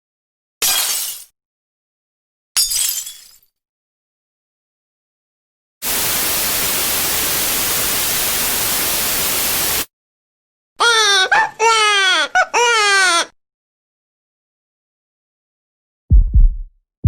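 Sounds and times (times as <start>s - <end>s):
burst of white noise: 5.8s - 9.9s.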